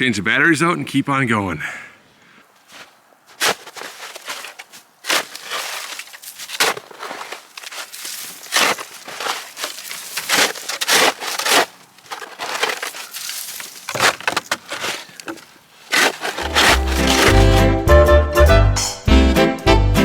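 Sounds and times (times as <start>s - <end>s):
footsteps crunching in snow: 2.5s - 17.8s.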